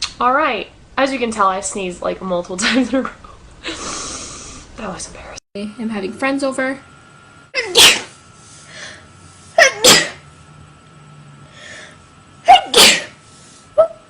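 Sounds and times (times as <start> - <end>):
woman sneezing: 7.6 - 8.2, 9.6 - 10.2, 12.5 - 13.2.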